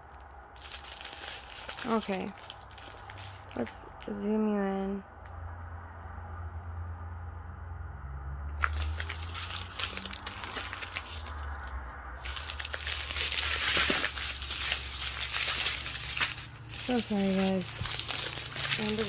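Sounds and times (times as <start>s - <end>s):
low steady hum: 0.0s - 19.0s
plastic bags crinkling: 0.1s - 4.2s, 8.5s - 19.0s.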